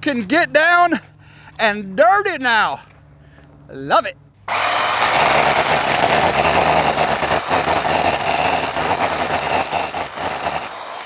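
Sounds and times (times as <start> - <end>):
tractor engine running: 4.4 - 11.0.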